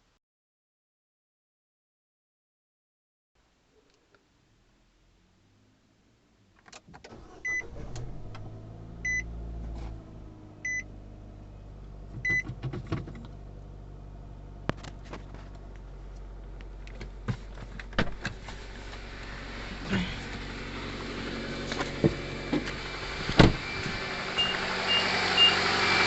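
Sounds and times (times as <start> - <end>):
short electronic beeps: 10.6 - 10.9.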